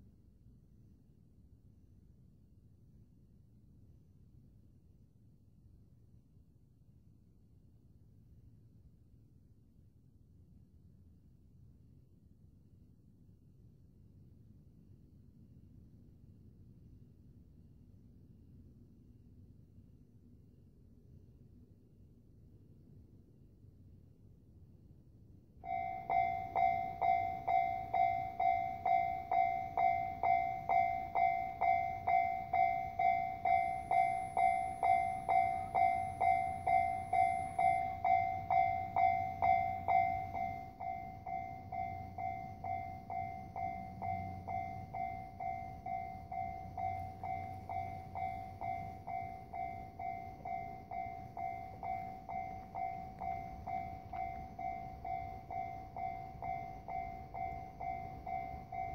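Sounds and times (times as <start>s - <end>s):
level crossing warning bell: 25.6s - 58.9s.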